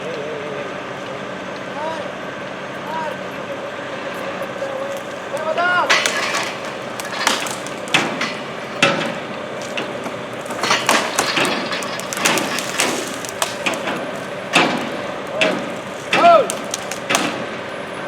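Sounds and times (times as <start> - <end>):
sharp knocks: 4.9 - 17.6.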